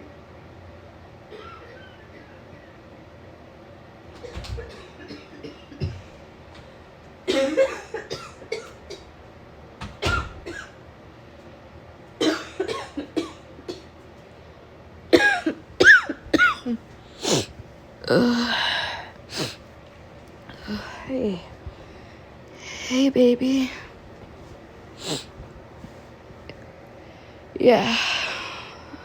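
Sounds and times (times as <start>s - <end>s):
woman coughing: 4.2s - 6.0s, 7.3s - 9.0s, 10.0s - 10.8s, 12.2s - 13.9s, 15.1s - 17.5s, 25.0s - 25.3s
voiced groan: 18.0s - 19.6s.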